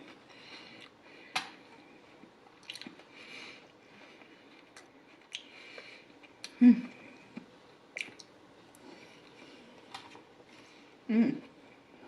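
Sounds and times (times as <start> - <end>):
wet chewing of salad: 2.6 - 3.1.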